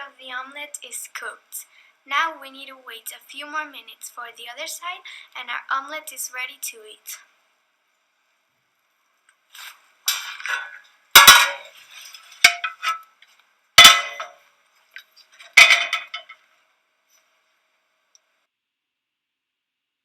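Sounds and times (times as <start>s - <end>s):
pans and dishes clattering: 10.1s - 13.0s, 13.8s - 14.4s, 15.5s - 16.4s.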